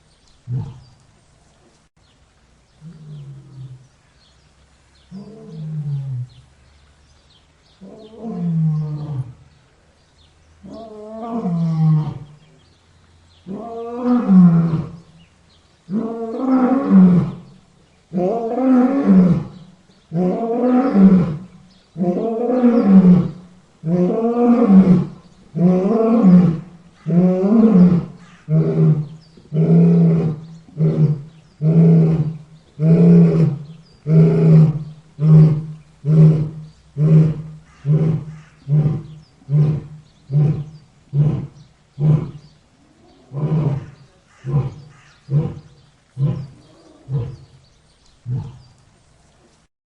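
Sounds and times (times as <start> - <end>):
lion roaring: 18.1 - 47.6, 48.2 - 48.7.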